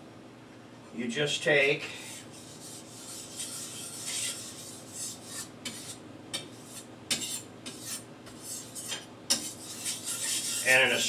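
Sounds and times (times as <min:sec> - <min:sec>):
knife scraping on sharpening stone: 0:02.3 - 0:10.8.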